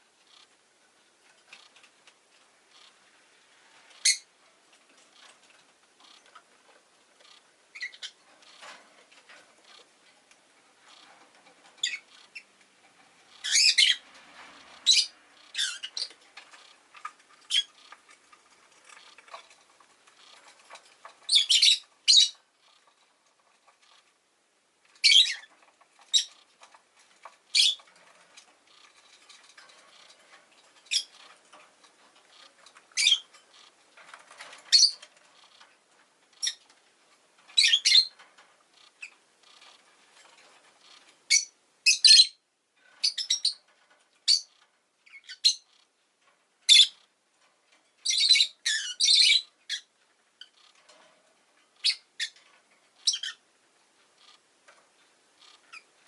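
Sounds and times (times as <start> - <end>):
lovebird chirps and squawks: 4.0 - 4.3, 7.2 - 8.2, 11.8 - 12.5, 13.3 - 14.0, 14.8 - 16.2, 17.4 - 18.0, 21.2 - 22.8, 25.0 - 26.4, 27.5 - 27.9, 30.9 - 31.3, 32.4 - 33.3, 34.7 - 35.0, 36.4 - 36.6, 37.6 - 38.2, 41.3 - 42.4, 43.0 - 43.6, 44.3 - 45.8, 46.7 - 47.0, 48.0 - 50.7, 51.8 - 52.4, 53.0 - 53.4, 55.4 - 55.9.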